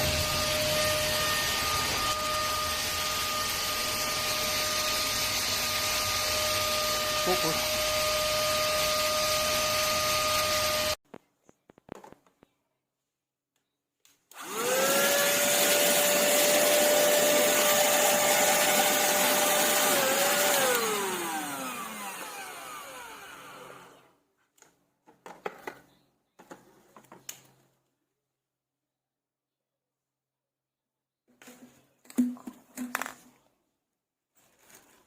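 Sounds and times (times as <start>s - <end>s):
vacuum cleaner motor whining: 0.0s - 11.0s, 14.3s - 24.1s.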